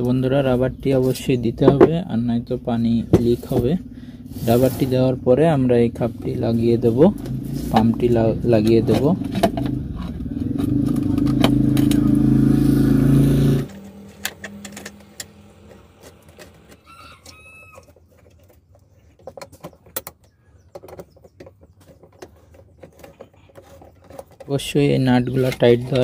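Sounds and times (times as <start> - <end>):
engine hum: 0.0 - 26.0
faint rooster crow: 16.7 - 18.0.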